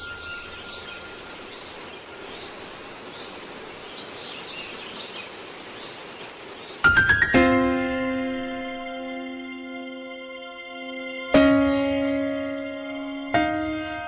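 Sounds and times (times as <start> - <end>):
faint high chirps: 0.0 - 5.4
outdoor background hiss: 0.0 - 14.0.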